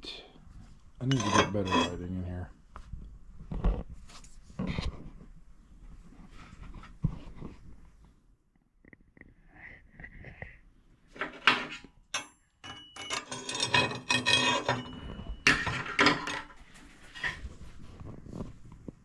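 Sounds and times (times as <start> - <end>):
steel plates clanking and scraping: 1.0 - 2.1, 11.2 - 17.4
metallic ringing tones: 12.1 - 16.4.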